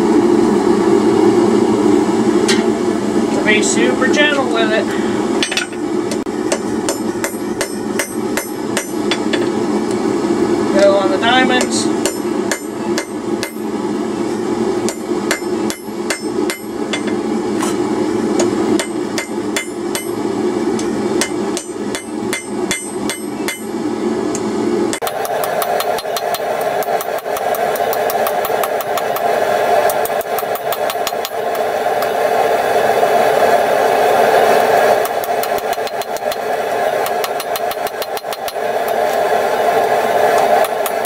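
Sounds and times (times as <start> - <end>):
steady drone: 0.0 - 41.0
hammer striking steel on anvil: 5.4 - 5.8, 6.5 - 9.5, 11.6 - 13.6, 14.8 - 17.2, 18.4 - 20.2, 21.2 - 23.7, 24.9 - 29.2, 29.8 - 32.2, 35.0 - 36.4, 37.0 - 38.6.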